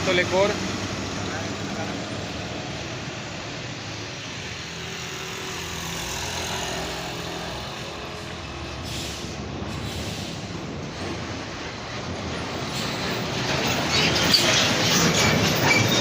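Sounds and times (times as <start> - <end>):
heavy truck engine passing: 0.0 - 16.0
air brakes hiss: 8.8 - 10.6.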